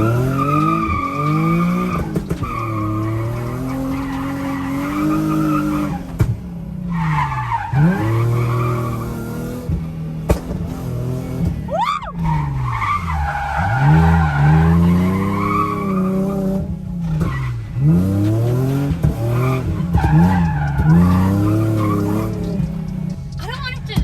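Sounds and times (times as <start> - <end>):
tyres squealing: 0.0 - 6.2, 11.7 - 24.0
car engine revving: 0.0 - 24.0.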